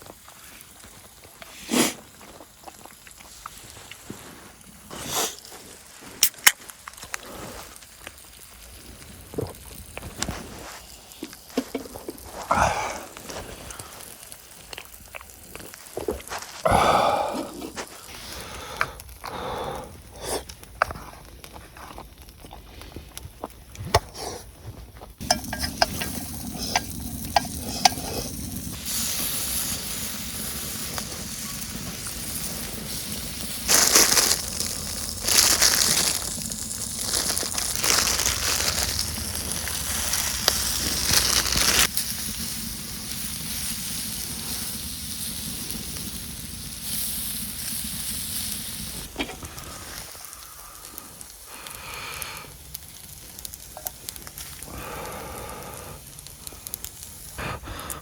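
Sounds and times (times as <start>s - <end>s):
food sizzling in hot pan: 25.2s - 57.4s.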